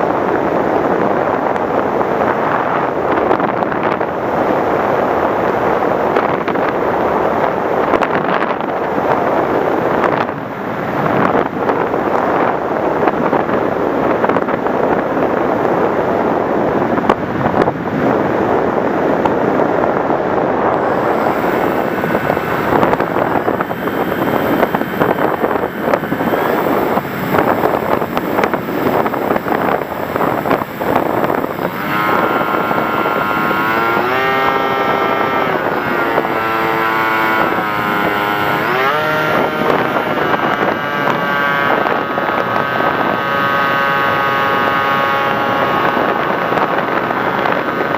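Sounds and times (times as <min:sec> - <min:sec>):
wind rushing: 0:00.0 - 0:47.9
model plane motor humming: 0:20.3 - 0:47.9.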